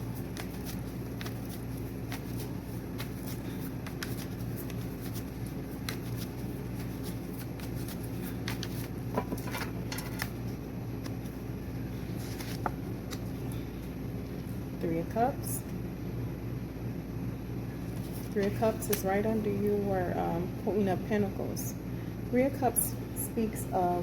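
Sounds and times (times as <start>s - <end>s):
cards being shuffled: 0.0s - 11.4s, 12.0s - 13.5s, 17.8s - 19.1s
steady low hum: 0.0s - 24.0s.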